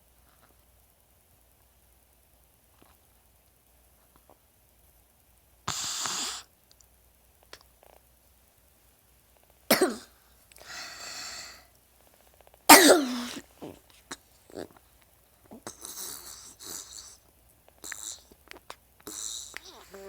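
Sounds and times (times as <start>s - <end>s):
person coughing: 9.7s - 10.1s, 12.7s - 13.8s.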